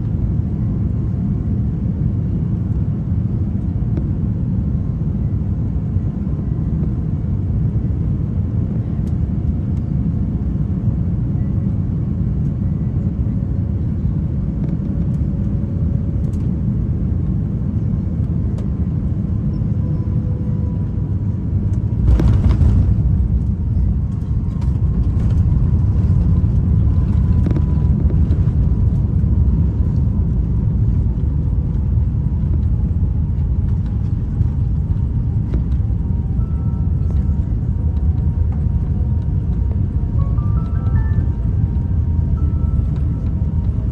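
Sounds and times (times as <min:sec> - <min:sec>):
aircraft cabin engine rumble: 0:00.0 - 0:43.9
faint steady tones: 0:34.8 - 0:43.9.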